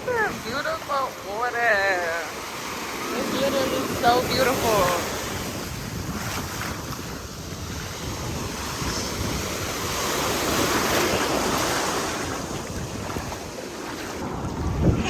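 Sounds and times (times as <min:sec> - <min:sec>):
ocean surf washing ashore: 0:00.0 - 0:15.0
wind buffeting microphone: 0:00.0 - 0:15.0.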